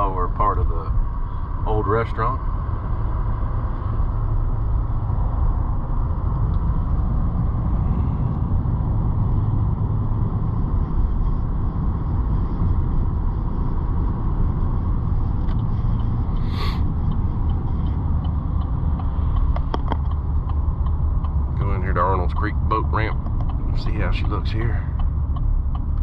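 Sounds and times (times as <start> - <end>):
road and engine noise in car: 0.0 - 26.0.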